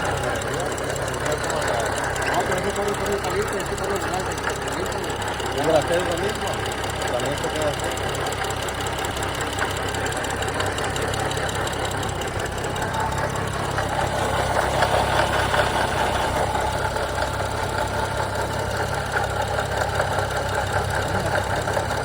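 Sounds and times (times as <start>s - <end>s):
car engine idling: 0.0s - 22.0s
fast ticking rattle: 0.0s - 22.0s.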